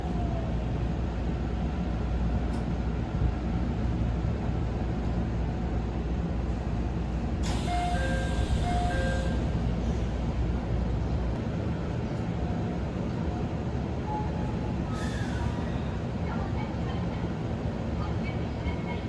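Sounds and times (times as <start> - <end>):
low train rumble: 0.0 - 19.0
train door mechanism hissing: 7.4 - 9.5.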